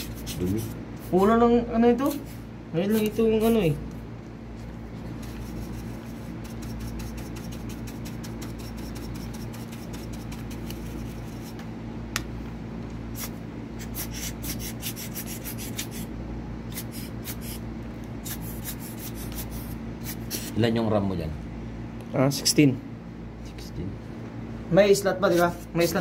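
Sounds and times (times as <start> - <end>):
small brush scrubbing: 0.0 - 1.3, 4.6 - 11.6, 13.2 - 16.1, 18.2 - 20.5
steady low hum: 0.0 - 26.0.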